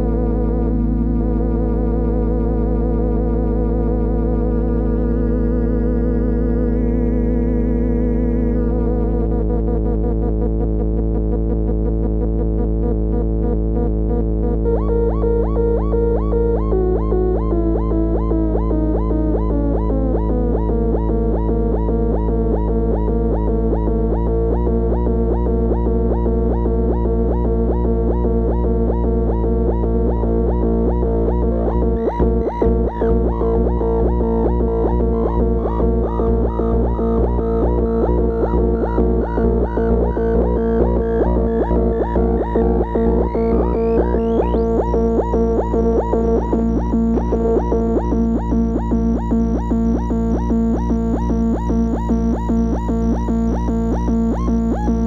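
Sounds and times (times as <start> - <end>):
buzzing synth drone: 0.0 - 55.0
warbling synth pulse: 32.0 - 55.0.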